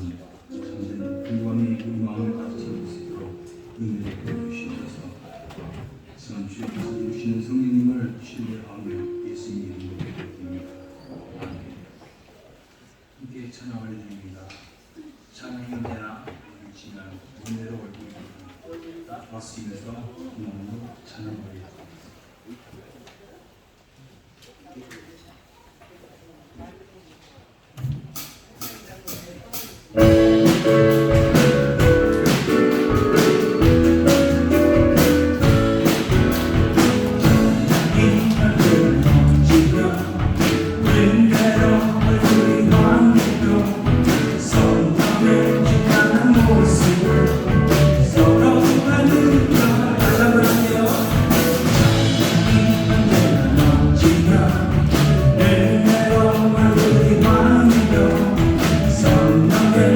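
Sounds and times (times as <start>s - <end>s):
worship band playing: 0.0s - 11.9s, 28.6s - 59.9s
steady drum beat: 28.6s - 59.9s
singing: 36.8s - 59.9s.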